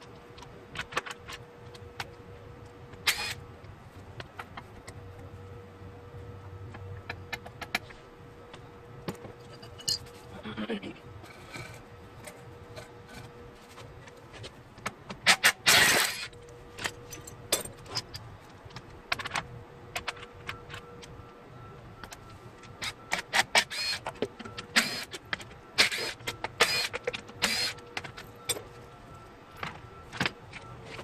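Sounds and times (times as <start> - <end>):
metal tools clinking and clanking: 9.4 - 10.3, 16.8 - 18.2.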